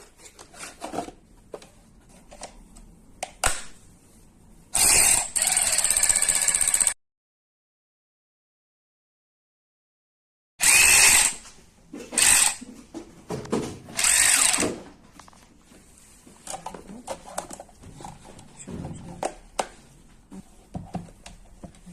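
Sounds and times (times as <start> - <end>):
cordless ratchet running: 10.6 - 11.4.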